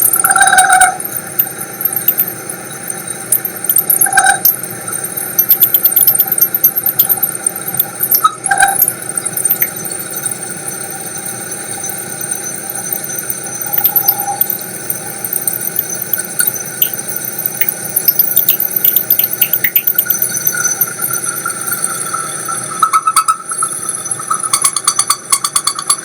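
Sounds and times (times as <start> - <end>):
milling machine squealing: 0.0 - 26.0
short clicks and ticks: 22.8 - 26.0.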